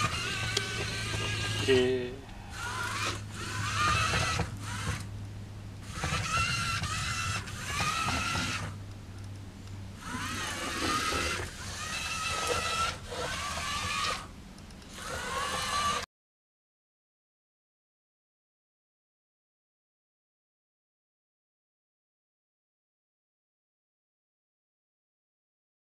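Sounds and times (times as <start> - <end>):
toy car motors whining: 0.0 - 5.1, 5.8 - 8.8, 10.0 - 16.1.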